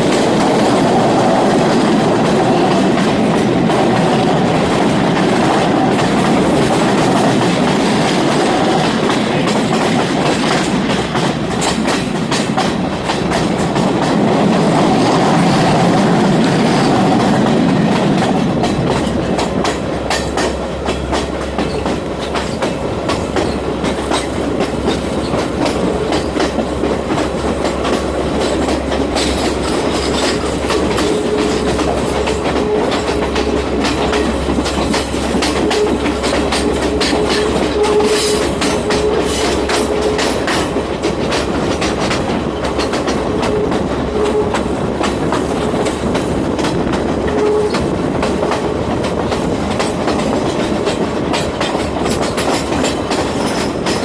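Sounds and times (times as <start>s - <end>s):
train carriage rumble: 0.0s - 54.0s
wheels clacking over rail joints: 0.0s - 54.0s.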